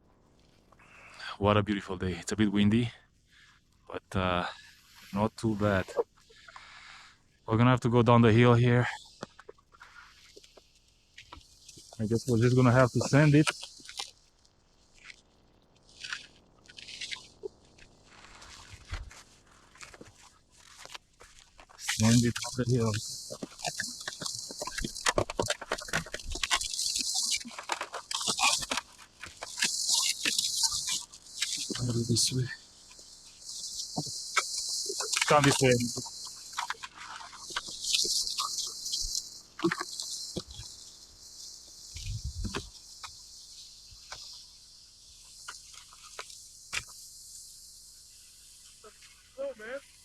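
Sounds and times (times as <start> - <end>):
steady high hiss: 0.0 - 50.0
footsteps crunching in snow: 18.1 - 23.1
wind rumble on microphone: 42.0 - 42.7.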